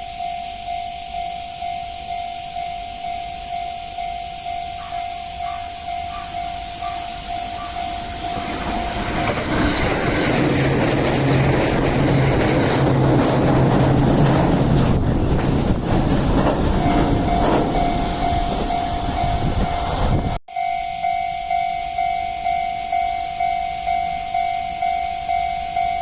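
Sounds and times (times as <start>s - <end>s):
level-crossing warning bell: 0.0s - 26.0s
train running noise: 3.3s - 20.4s.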